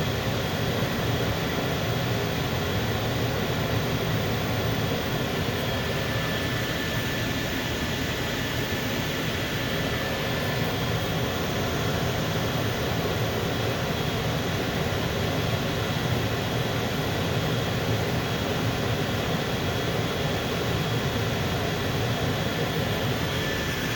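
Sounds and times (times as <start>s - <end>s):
furnace burner and fan rushing: 0.0s - 23.9s
faint high whine: 22.4s - 23.9s.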